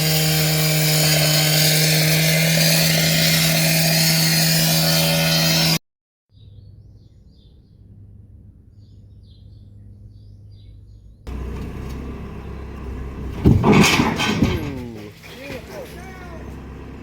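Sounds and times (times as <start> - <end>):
loud engine with clatter: 0.0 - 5.8, 11.3 - 17.0
engine idling: 11.3 - 17.0
loud knocks: 13.0 - 15.2.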